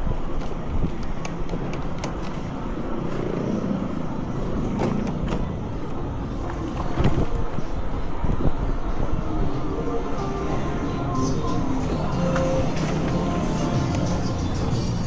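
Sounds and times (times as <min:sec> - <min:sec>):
motor vehicles passing: 0:03.1 - 0:15.0.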